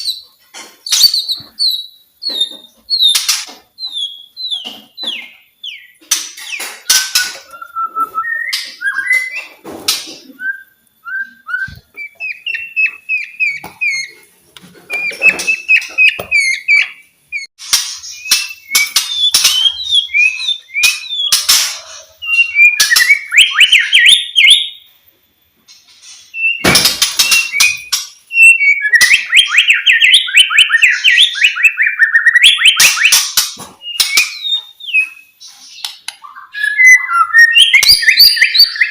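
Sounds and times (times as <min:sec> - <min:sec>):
bird singing whistled phrases: 0:06.9 - 0:09.5, 0:10.4 - 0:14.1, 0:18.1 - 0:24.8, 0:26.3 - 0:33.2, 0:33.9 - 0:38.9.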